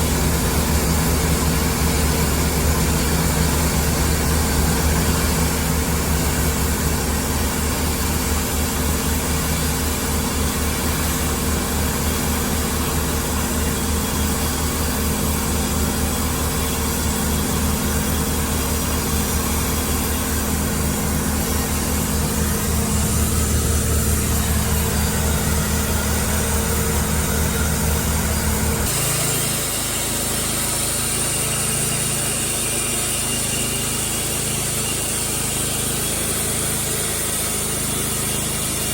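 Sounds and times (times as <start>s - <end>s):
high-pitched machine sound: 0.0s - 38.9s
engine humming: 18.5s - 29.0s.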